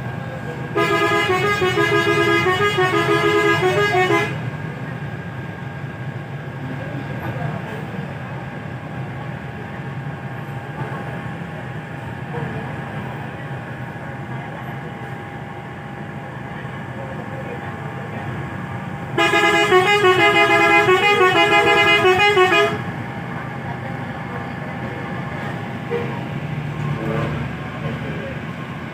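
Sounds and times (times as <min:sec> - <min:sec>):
low rumble of engines and traffic: 0:00.0 - 0:28.9
bus horn playing a tune: 0:00.7 - 0:04.5, 0:19.1 - 0:23.0.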